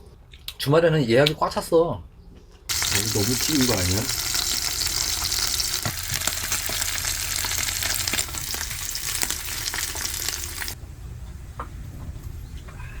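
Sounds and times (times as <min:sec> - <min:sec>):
meat sizzling as it fries: 0:02.7 - 0:10.8.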